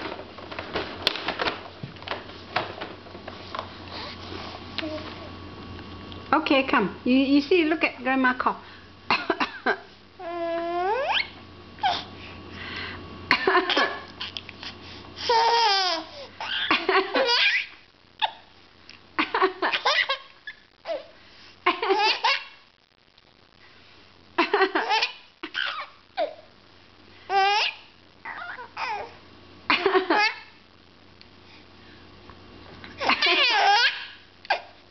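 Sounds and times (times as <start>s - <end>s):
baby laughing: 10.4s - 12.1s, 15.3s - 18.3s, 19.7s - 20.6s, 21.7s - 22.6s, 24.6s - 26.0s, 29.8s - 30.5s, 33.0s - 34.6s.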